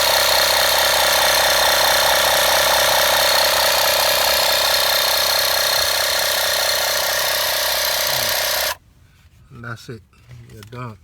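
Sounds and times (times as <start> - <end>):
electric air compressor whining: 0.0 - 8.8.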